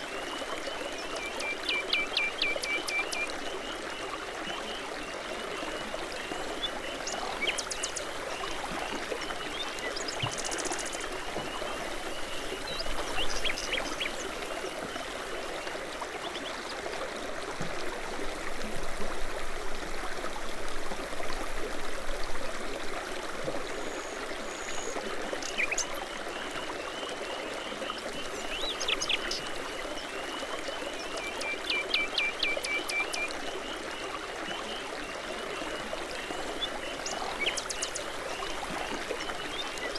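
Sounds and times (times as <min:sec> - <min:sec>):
songbirds chirping: 0:00.0 - 0:16.8, 0:24.6 - 0:39.9
brook water trickling: 0:00.0 - 0:39.9.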